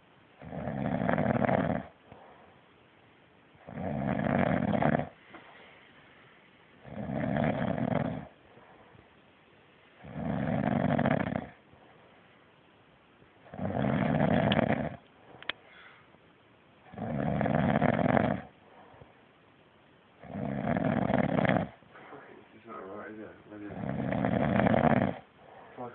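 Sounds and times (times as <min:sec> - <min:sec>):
quiet breaths: 0:00.0 - 0:25.9
heavy snoring: 0:00.4 - 0:02.3, 0:03.6 - 0:05.2, 0:06.8 - 0:08.8, 0:10.0 - 0:11.6, 0:13.5 - 0:15.0, 0:16.9 - 0:18.6, 0:20.2 - 0:21.8, 0:23.5 - 0:25.9
faint click: 0:15.0 - 0:15.6.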